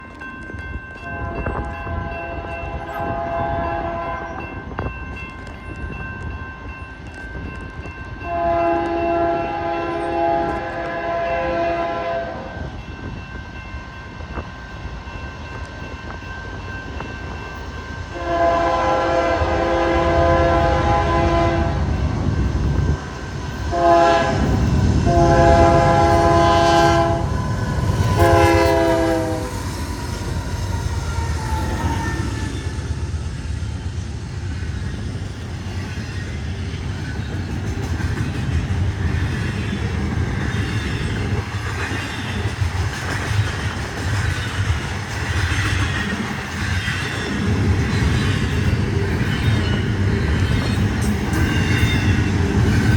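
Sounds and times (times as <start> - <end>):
locomotive air horn blasts: 3.0 - 4.2, 8.3 - 12.5, 18.1 - 21.9, 23.7 - 27.4, 28.0 - 29.6.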